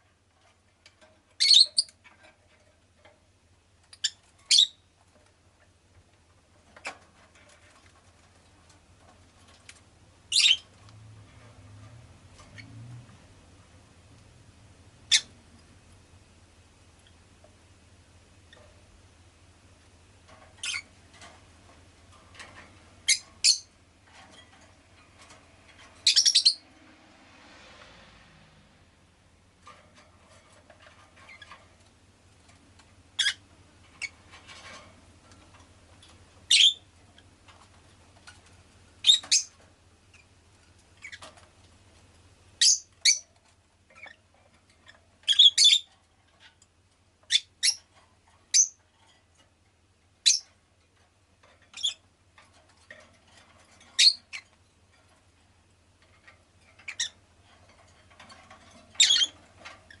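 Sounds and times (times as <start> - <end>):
bird chirps and squawks: 4.0 - 4.8, 10.3 - 10.6, 26.0 - 26.6, 36.5 - 36.8, 59.0 - 59.3.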